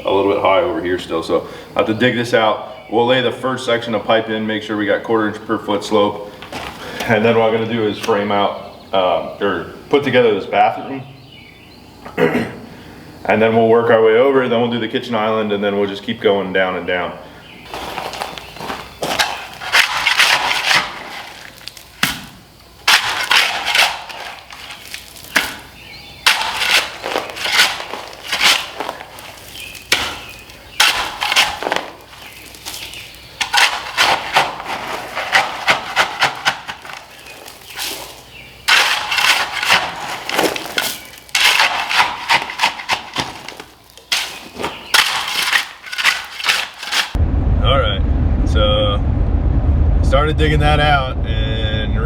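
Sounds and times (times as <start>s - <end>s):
shovel crunching and scraping gravel: 17.7s - 47.2s.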